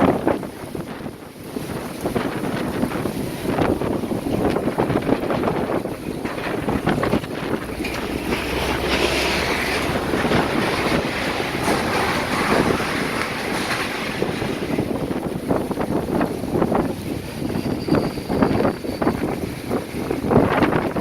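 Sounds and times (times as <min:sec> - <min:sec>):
storm wind gusting: 0:00.0 - 0:21.0.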